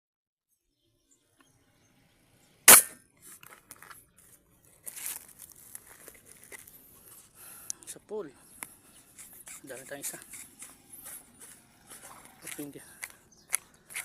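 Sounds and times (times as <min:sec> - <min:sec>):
airgun shot: 0:02.7 - 0:03.0.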